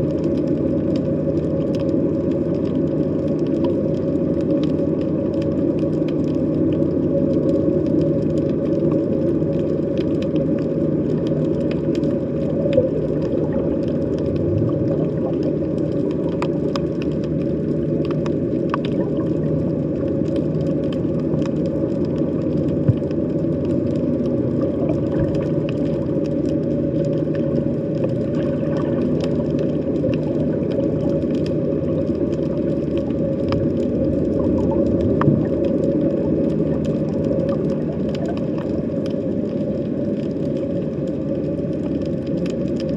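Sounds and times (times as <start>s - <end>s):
underwater low hum: 0.0s - 42.9s
faint clicks: 18.0s - 19.2s.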